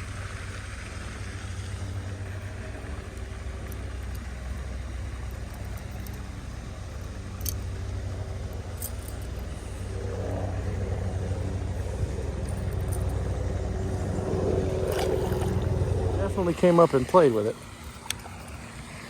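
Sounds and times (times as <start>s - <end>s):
steady engine hum: 0.0s - 19.0s
faint clicks: 1.6s - 10.8s, 17.8s - 19.0s.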